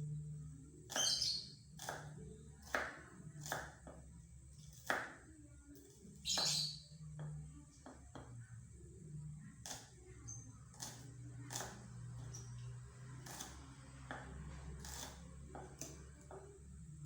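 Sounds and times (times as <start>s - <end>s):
bird chirping: 0.9s - 2.4s, 6.2s - 7.0s, 12.2s - 12.8s.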